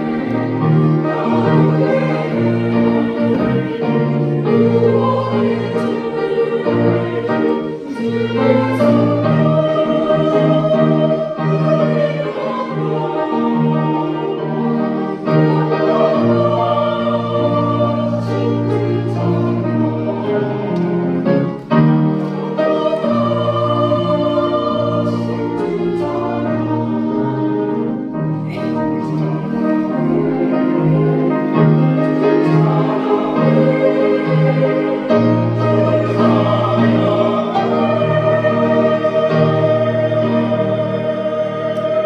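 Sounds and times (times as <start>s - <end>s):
church choir singing: 0.0s - 42.0s
instrumental accompaniment: 0.0s - 42.0s.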